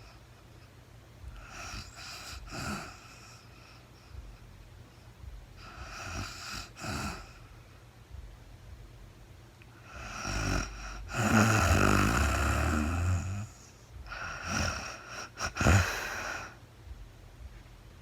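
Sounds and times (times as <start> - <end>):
woman snoring: 1.4 - 3.5, 5.6 - 7.4, 9.9 - 16.6
noisy breathing with catches: 9.7 - 16.6.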